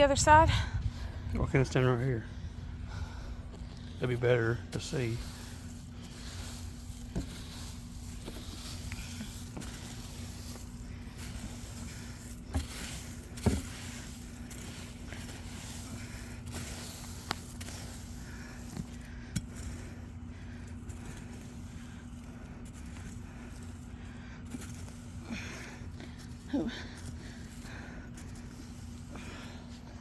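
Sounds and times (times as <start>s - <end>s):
steady background hum: 0.0s - 30.0s
knocks and scrapes: 4.7s - 15.9s.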